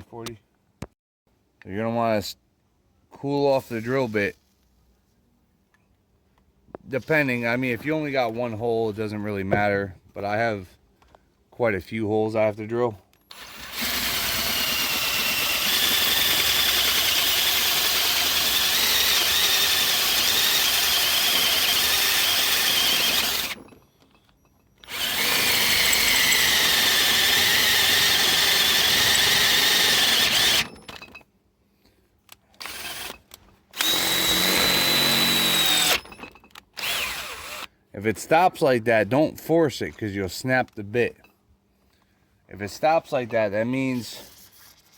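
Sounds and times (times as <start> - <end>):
electric drill running: 13.3 - 23.7, 24.8 - 31.2, 32.6 - 36.2, 36.8 - 37.7.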